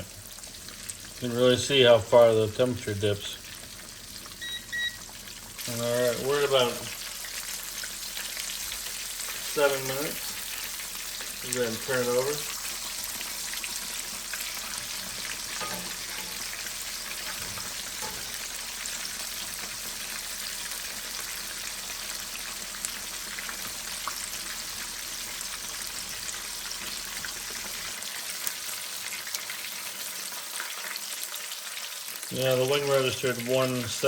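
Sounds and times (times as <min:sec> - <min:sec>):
chicken sizzling in hot oil: 0:00.0 - 0:34.0.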